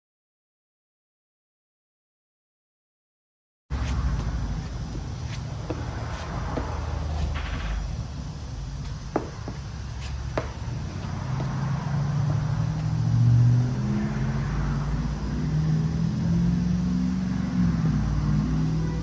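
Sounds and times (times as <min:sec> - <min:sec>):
engine running and revving: 0:10.8 - 0:19.0.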